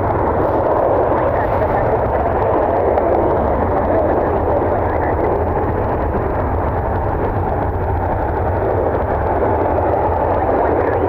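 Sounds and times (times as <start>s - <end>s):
wind blowing across microphone: 0.0s - 11.0s.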